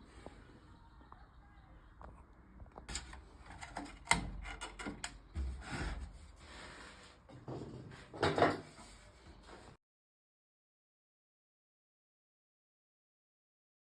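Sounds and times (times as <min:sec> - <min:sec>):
scraping on workbench: 0:05.4 - 0:09.8.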